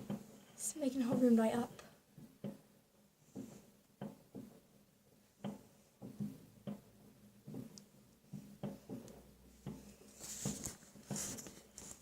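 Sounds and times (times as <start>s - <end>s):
distant fireworks thuds and pops: 3.3s - 4.7s, 5.4s - 9.8s.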